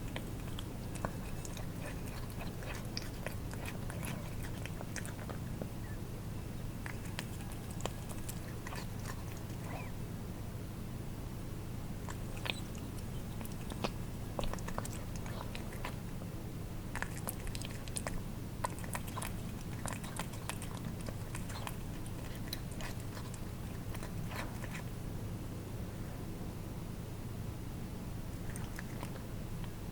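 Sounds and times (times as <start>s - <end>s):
cats chewing wet food: 0.0s - 10.0s, 11.9s - 25.1s, 28.3s - 29.9s
steady low hum: 0.0s - 29.9s
tongue-lapping clicks: 12.1s - 16.0s.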